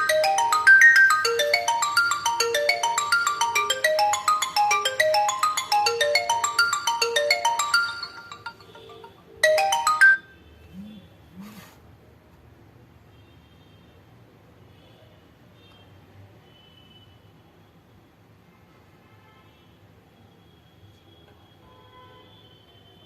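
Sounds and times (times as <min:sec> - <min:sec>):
ringtone melody: 0:00.0 - 0:10.3.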